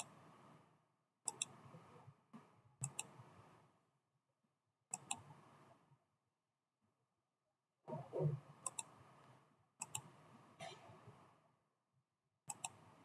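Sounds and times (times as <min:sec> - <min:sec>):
computer mouse clicking: 0:01.2 - 0:01.6, 0:02.8 - 0:03.2, 0:04.9 - 0:05.3, 0:08.6 - 0:08.9, 0:09.8 - 0:10.1, 0:12.5 - 0:12.8.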